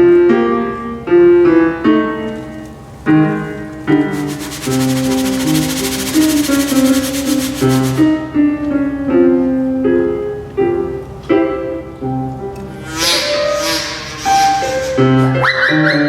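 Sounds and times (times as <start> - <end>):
piano playing light notes: 0.0 - 16.0
fast percussion effect: 4.1 - 8.0
short noisy swish: 4.1 - 8.0.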